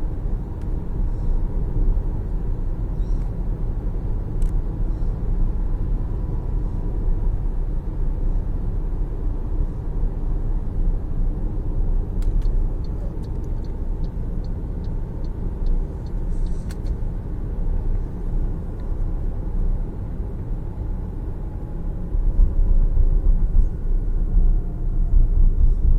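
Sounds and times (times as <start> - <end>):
road and tyre rumble: 0.0 - 25.9
light quick ticks: 12.2 - 17.0.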